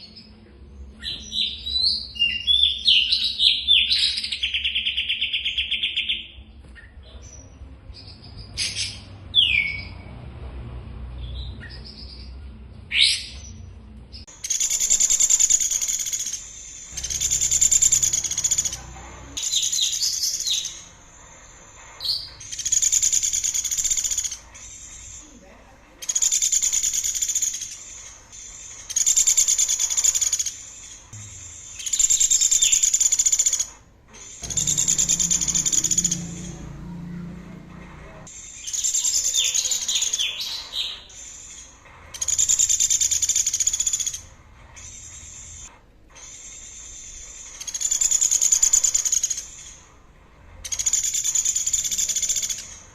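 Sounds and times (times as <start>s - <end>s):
songbird buzzy trilled song: 14.4s - 20.9s.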